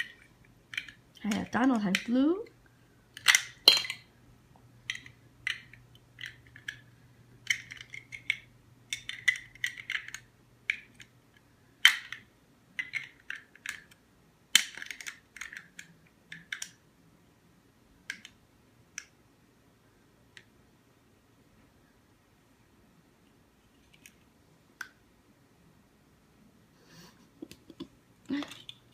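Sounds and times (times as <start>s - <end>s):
plastic bricks clicking and clattering: 0.0s - 2.2s, 3.1s - 4.1s, 4.9s - 16.8s, 28.3s - 28.9s.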